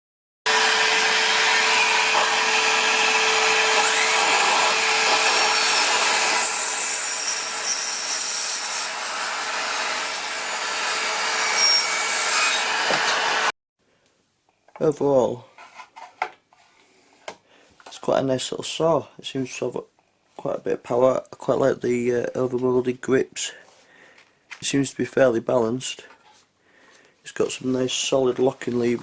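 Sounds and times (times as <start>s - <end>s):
workshop vacuum running: 0.5s - 7.7s, 8.3s - 13.5s
cordless saw cutting wood: 0.5s - 13.5s.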